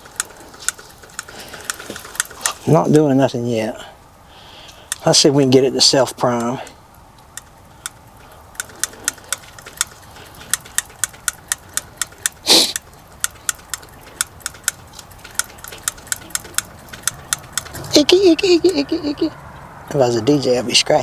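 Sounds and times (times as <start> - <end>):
electric fuel pump ticking: 0.0 - 3.2, 4.4 - 20.0
brief hiss: 12.4 - 12.8.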